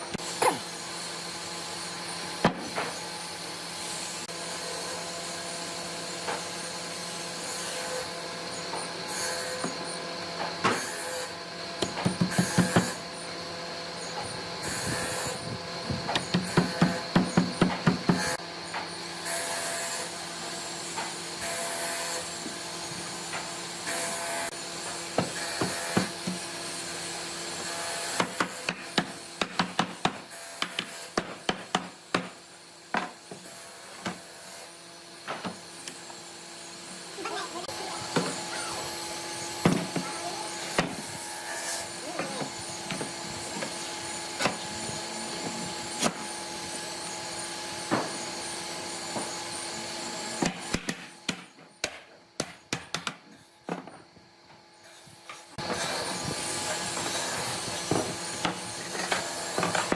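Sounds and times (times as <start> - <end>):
knocks of wood and hand tools: 11.8 - 13.0, 28.2 - 33.4, 50.4 - 54.1.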